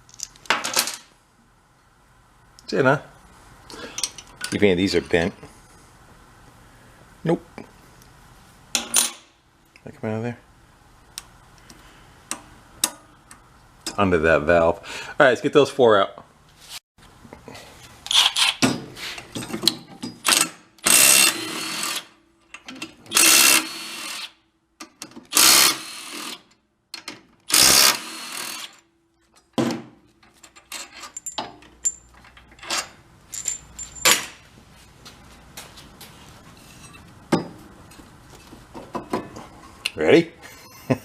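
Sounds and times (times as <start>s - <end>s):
metal parts clicking and clinking: 30.2s - 34.4s.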